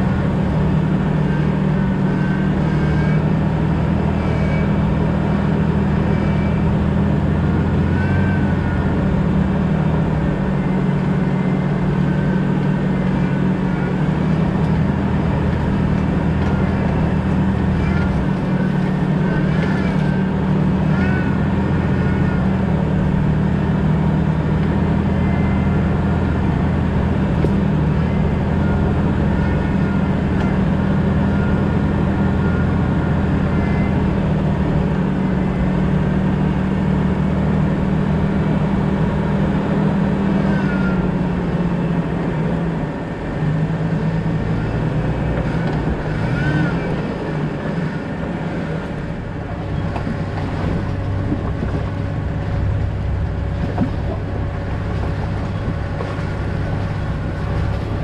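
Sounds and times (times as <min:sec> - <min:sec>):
car engine drone: 0:00.0 - 0:58.0
road noise: 0:00.0 - 0:58.0
faint short squeaks: 0:01.2 - 0:09.1, 0:10.4 - 0:22.7.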